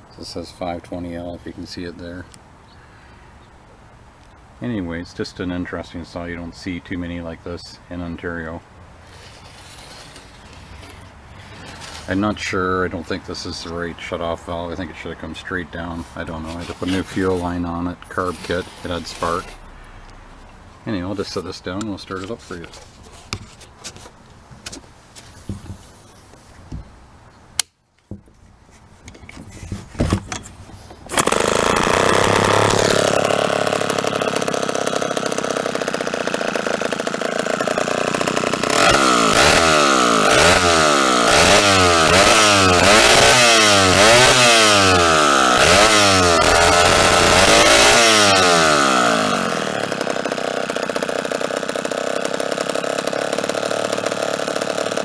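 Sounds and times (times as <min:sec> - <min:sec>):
chainsaw engine revving: 0:09.0 - 0:21.4, 0:31.1 - 0:55.0.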